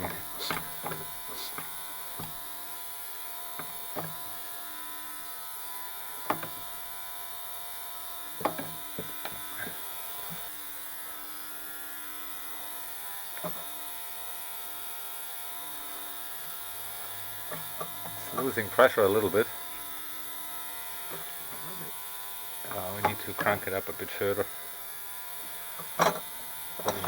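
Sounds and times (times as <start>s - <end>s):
steady buzzing hum: 0.0s - 27.0s
metal parts clicking and tapping: 0.4s - 2.4s, 8.4s - 9.6s, 13.4s - 13.7s, 17.5s - 18.6s, 22.7s - 23.6s, 25.8s - 27.0s.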